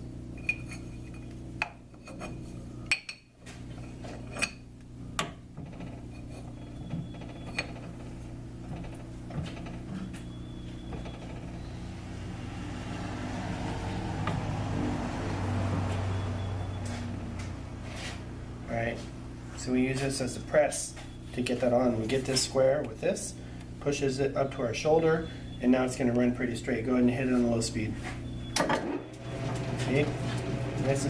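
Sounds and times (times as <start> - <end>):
low steady hum: 0.0 - 31.0
wheel scraping on lathe: 5.6 - 18.4, 29.2 - 31.0.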